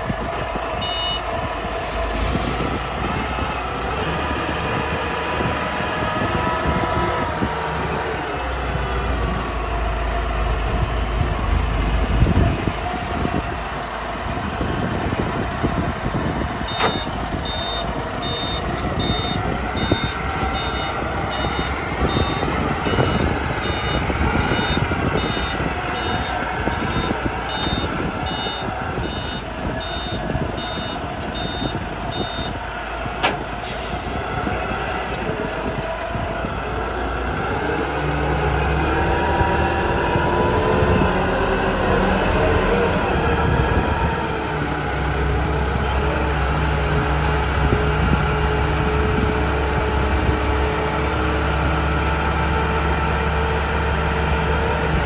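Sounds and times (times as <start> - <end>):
heavy vehicle engine running: 0.0 - 55.0
reversing alarm beeping: 0.7 - 1.4, 16.6 - 32.6.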